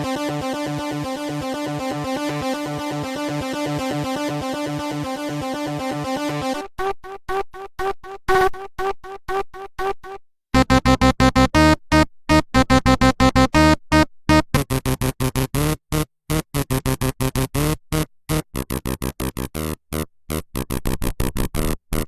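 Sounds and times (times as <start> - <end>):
synthesizer staccato notes: 10.6 - 17.7.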